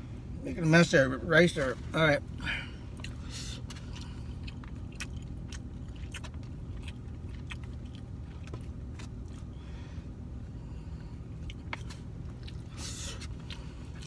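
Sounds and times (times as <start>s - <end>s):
steady low hum: 0.0s - 14.0s
chewing and biting: 2.8s - 9.7s, 10.4s - 14.0s.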